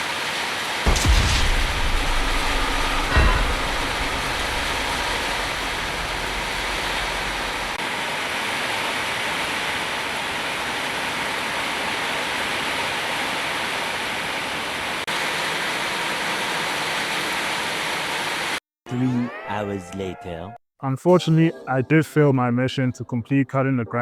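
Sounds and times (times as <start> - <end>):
rain hissing: 0.6 - 8.2
low rumble: 0.9 - 7.8.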